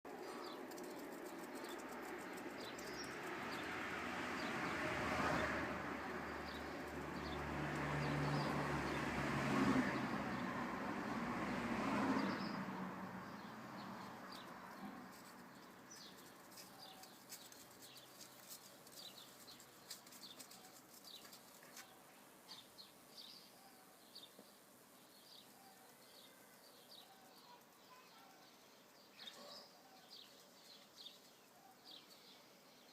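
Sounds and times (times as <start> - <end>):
rustling: 14.8 - 22.2.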